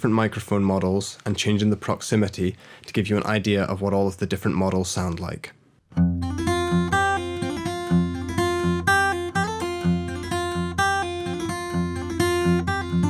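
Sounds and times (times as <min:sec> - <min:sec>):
acoustic guitar picking: 0:05.9 - 0:13.0.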